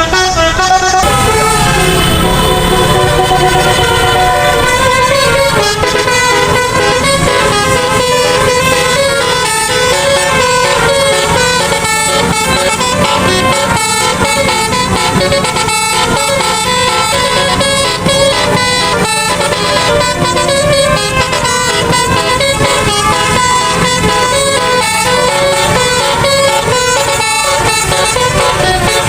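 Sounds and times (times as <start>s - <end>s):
multi-tone air horns melody: 0.0s - 29.0s.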